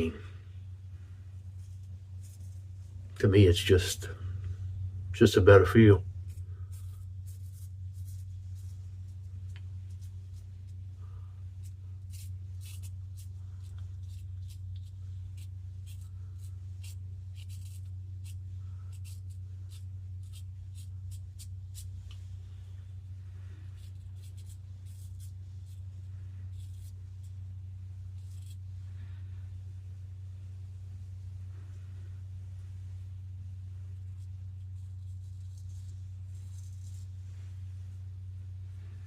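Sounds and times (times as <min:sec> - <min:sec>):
steady low hum: 0:00.0 - 0:39.0
razor scraping stubble: 0:05.4 - 0:10.8, 0:11.6 - 0:21.9, 0:23.7 - 0:27.4, 0:28.1 - 0:28.7.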